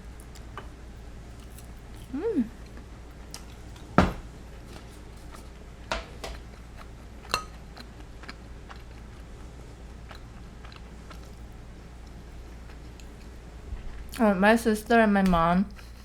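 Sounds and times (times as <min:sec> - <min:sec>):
chewing: 0:06.3 - 0:14.2.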